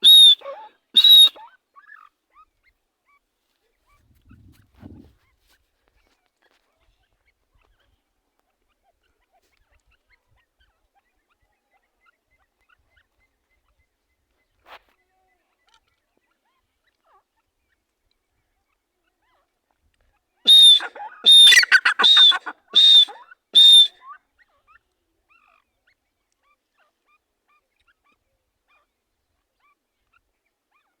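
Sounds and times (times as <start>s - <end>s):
francolin calling: 0.0s - 1.4s, 20.5s - 23.9s.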